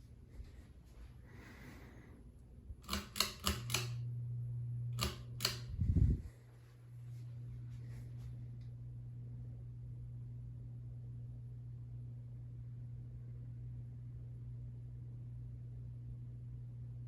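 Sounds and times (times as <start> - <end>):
low motor hum: 2.2 - 17.0
ceiling fan switch clicks: 2.8 - 4.1, 4.9 - 5.9.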